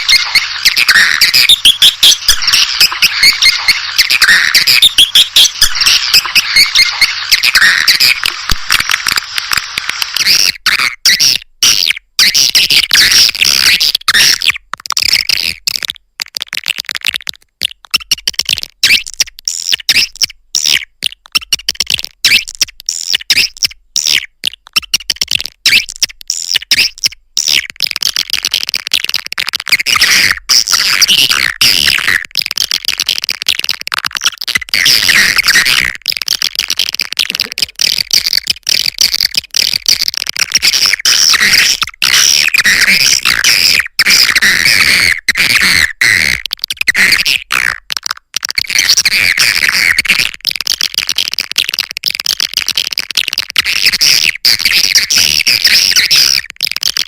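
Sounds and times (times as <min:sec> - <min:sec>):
swiftlets chirping and twittering: 0:00.0 - 0:09.4.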